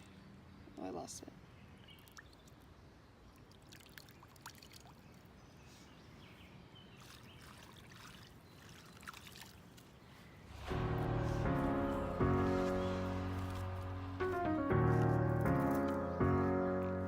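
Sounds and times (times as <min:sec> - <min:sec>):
small stream trickling: 0:01.8 - 0:05.6, 0:06.6 - 0:10.4.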